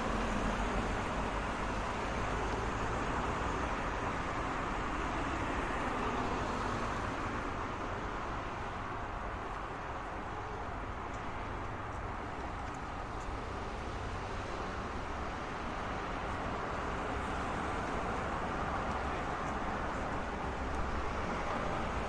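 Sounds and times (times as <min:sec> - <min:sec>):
cars passing: 0:00.0 - 0:22.0.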